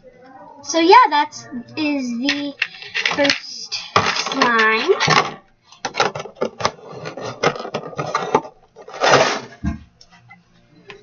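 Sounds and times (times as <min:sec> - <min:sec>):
plastic lids and tubs clicking: 0:04.0 - 0:09.8
container set down with thud: 0:07.5 - 0:09.9.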